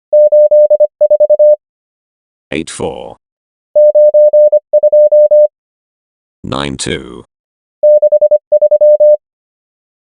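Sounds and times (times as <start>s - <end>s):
morse code beeps: 0.1s - 1.6s, 3.8s - 5.5s, 7.8s - 9.2s
person speaking: 2.5s - 3.2s, 6.4s - 7.3s.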